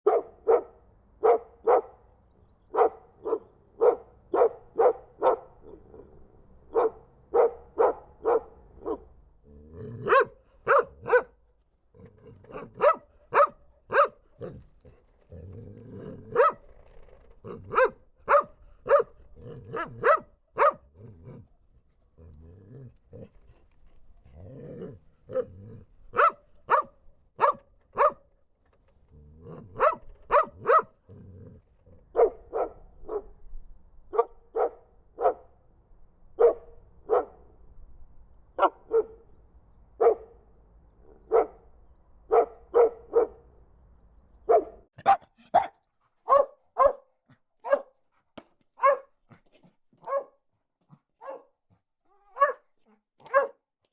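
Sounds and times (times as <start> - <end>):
dogs barking: 0.0 - 2.0, 2.7 - 6.1, 6.7 - 9.1, 10.0 - 11.4, 12.5 - 14.2, 16.3 - 16.6, 17.7 - 20.9, 26.1 - 28.2, 29.8 - 30.9, 32.1 - 33.3, 34.1 - 35.5, 36.4 - 37.4, 38.6 - 39.2, 40.0 - 40.4, 41.1 - 41.6, 42.3 - 43.5, 44.4 - 47.0, 47.6 - 47.9, 48.8 - 49.1, 50.0 - 50.3, 51.2 - 51.6, 52.4 - 52.6, 53.2 - 53.6.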